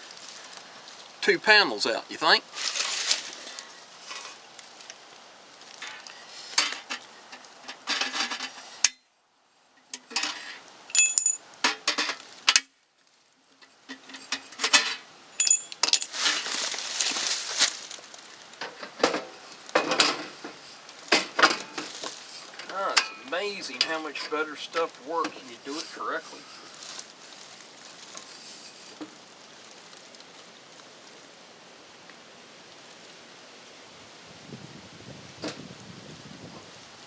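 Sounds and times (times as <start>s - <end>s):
bright metallic clinks: 10.9s - 11.4s, 15.4s - 16.3s.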